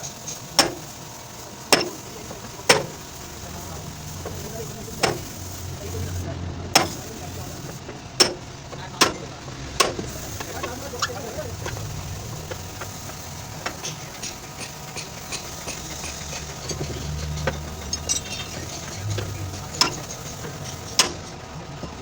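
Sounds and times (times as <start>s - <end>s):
low steady rumble: 1.5s - 22.0s
tools clicking and knocking: 11.6s - 21.2s.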